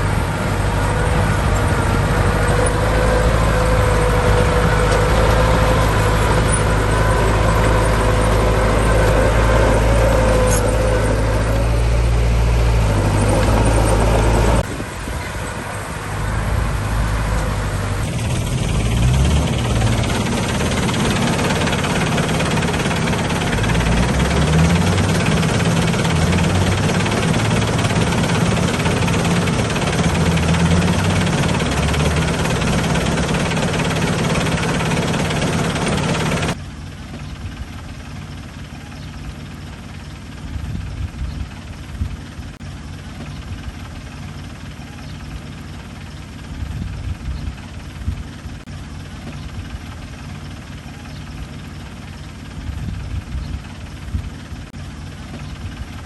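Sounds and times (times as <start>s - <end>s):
engine pitch rising and falling: 0.0s - 36.6s
heavy diesel engine running: 0.0s - 56.0s.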